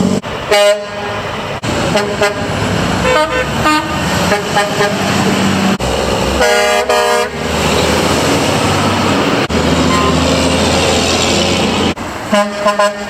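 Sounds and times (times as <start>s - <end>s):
truck air horn blasts: 0.0s - 5.3s, 6.4s - 7.5s, 9.8s - 10.6s, 12.3s - 13.0s
truck engine passing: 0.0s - 13.0s.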